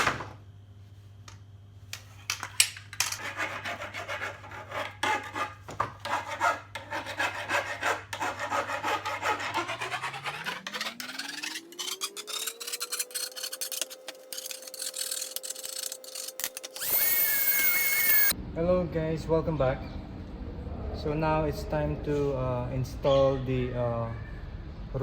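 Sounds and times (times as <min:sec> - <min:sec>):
hacksaw cutting metal: 0:03.2 - 0:18.3.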